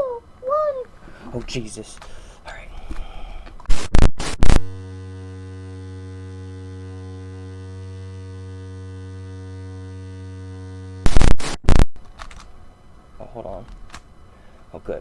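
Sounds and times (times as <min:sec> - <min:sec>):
low electric buzzing hum: 0:00.0 - 0:15.0
loud distorted bursts: 0:03.7 - 0:04.8, 0:11.0 - 0:11.9.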